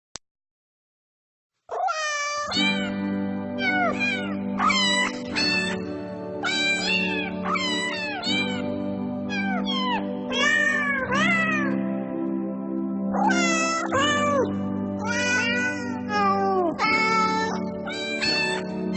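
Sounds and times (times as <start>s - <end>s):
cats meowing: 1.7s - 3.0s, 3.6s - 8.7s, 9.3s - 11.8s, 13.2s - 18.9s
background music: 2.5s - 18.9s.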